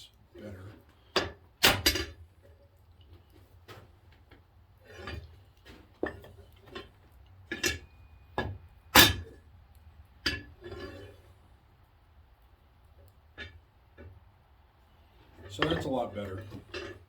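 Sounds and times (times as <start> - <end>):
fire poker striking anvil: 1.2 - 2.2, 7.5 - 9.4.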